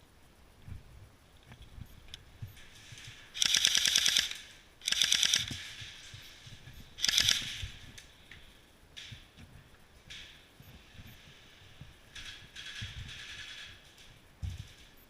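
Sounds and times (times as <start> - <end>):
airsoft gun firing bursts: 3.4 - 6.0, 7.0 - 7.8.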